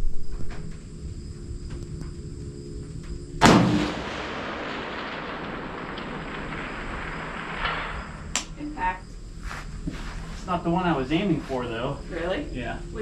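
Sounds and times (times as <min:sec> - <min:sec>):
rifle shot: 0:03.4 - 0:09.0
rolling echo: 0:03.4 - 0:10.0.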